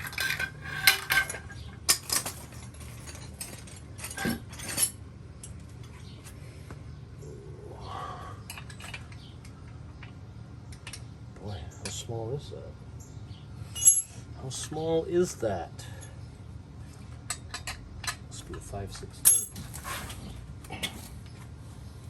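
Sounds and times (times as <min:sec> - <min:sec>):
metal wrenches clinking: 0:00.0 - 0:06.0, 0:13.7 - 0:14.3, 0:17.3 - 0:20.1.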